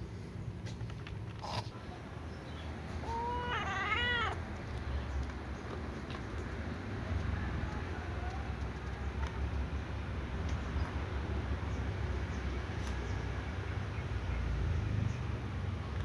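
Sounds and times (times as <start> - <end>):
cat meowing: 3.0 - 4.4.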